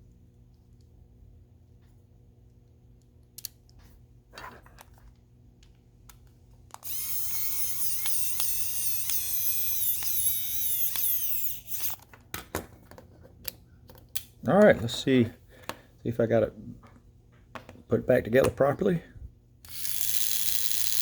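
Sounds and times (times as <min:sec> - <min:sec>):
handling clicks: 0:05.6 - 0:12.1
regular ticks: 0:06.8 - 0:12.0
small electric motor whining: 0:06.8 - 0:12.0, 0:19.7 - 0:21.0.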